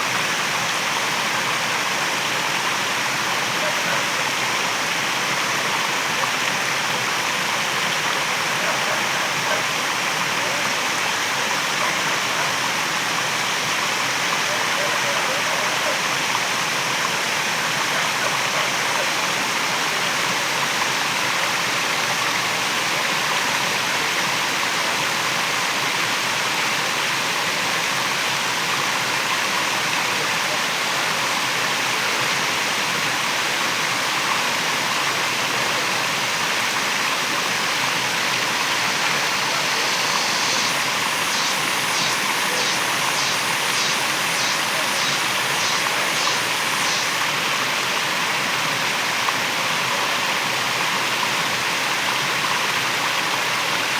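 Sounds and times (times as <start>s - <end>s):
waterfall rushing: 36.4s - 53.9s
high rhythmic pulsing: 38.9s - 47.3s.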